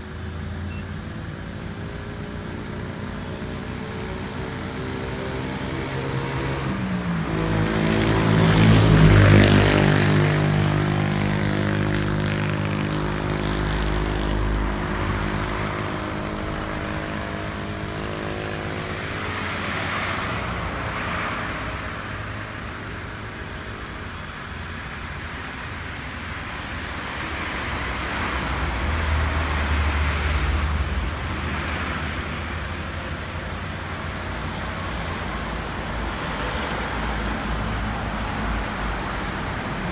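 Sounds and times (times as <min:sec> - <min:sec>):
road traffic noise: 0:00.0 - 0:39.9
vehicle engine passing by: 0:02.4 - 0:23.2.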